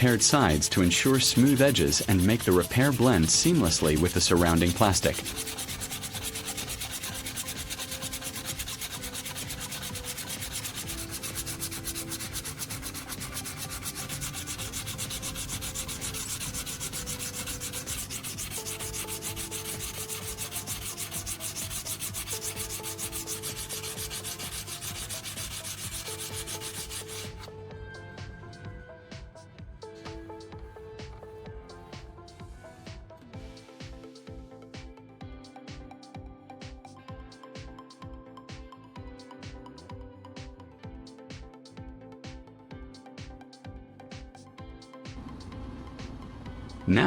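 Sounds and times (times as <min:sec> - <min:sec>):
sandpaper rubbing on plastic: 0:00.0 - 0:27.5.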